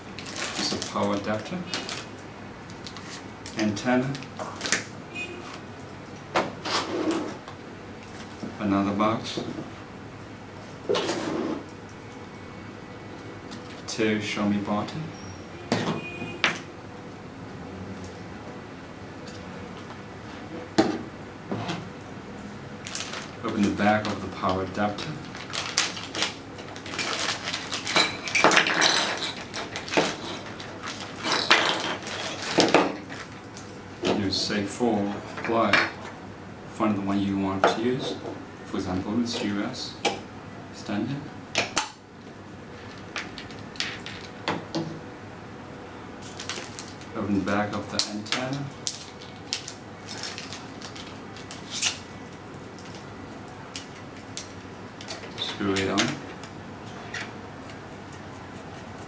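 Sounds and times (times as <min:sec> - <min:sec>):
plastic bag rustling and clicking: 0:22.8 - 0:34.3, 0:46.2 - 0:56.5.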